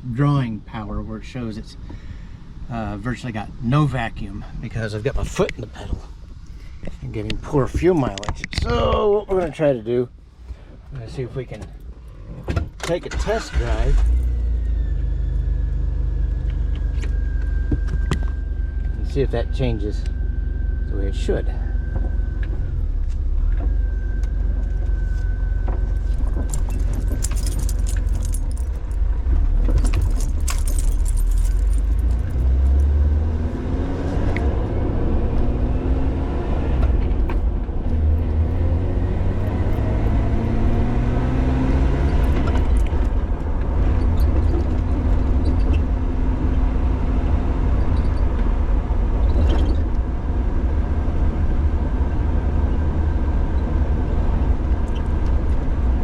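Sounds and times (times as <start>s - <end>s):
car engine and road rumble: 0.0s - 56.0s
jangling rattle: 26.0s - 29.0s, 29.6s - 33.0s.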